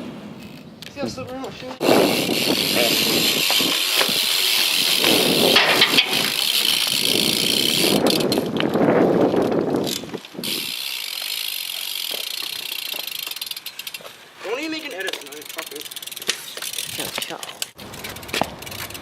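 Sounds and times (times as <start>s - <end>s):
bike tyres rolling on pavement: 0.0s - 19.0s.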